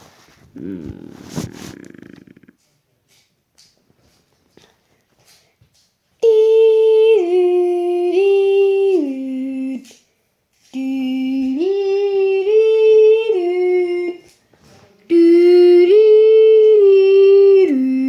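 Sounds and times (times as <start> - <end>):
person humming a slow tune: 6.2 - 9.8, 10.7 - 14.3, 15.1 - 18.0.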